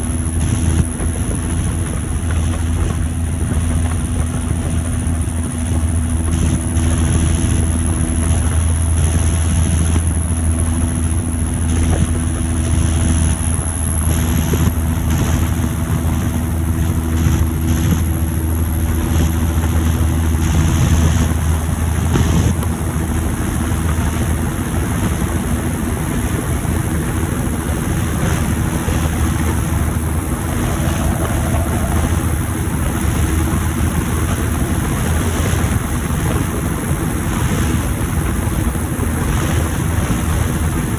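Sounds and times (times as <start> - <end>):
diesel tractor engine running: 0.0 - 40.9
high turbo whistle: 28.9 - 34.6.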